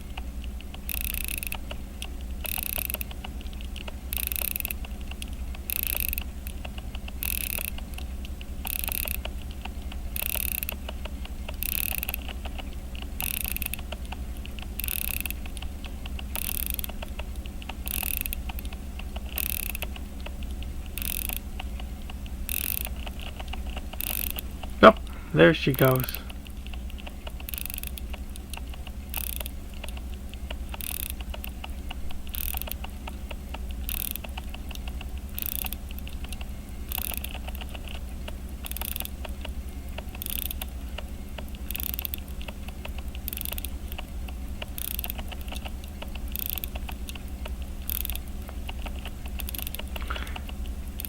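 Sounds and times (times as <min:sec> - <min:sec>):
steady low hum: 0:00.0 - 0:51.0
watch winding ratchet clicks: 0:00.8 - 0:01.7, 0:02.4 - 0:03.3, 0:04.1 - 0:08.0, 0:08.6 - 0:09.4, 0:10.2 - 0:10.9, 0:11.5 - 0:12.4, 0:13.2 - 0:14.0, 0:14.6 - 0:15.7, 0:16.3 - 0:17.1, 0:17.8 - 0:19.9, 0:20.6 - 0:24.4, 0:26.7 - 0:30.1, 0:30.7 - 0:32.9, 0:33.8 - 0:37.9, 0:38.6 - 0:39.2, 0:40.0 - 0:40.7, 0:41.6 - 0:47.2, 0:47.8 - 0:51.0.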